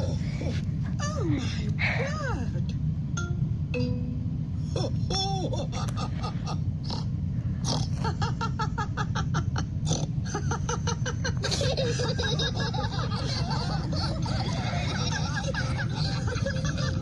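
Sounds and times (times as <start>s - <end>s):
low hum: 0.0s - 17.0s
cartoon characters laughing: 4.8s - 6.7s, 8.0s - 17.0s
cartoon pigs snorting: 5.7s - 8.2s.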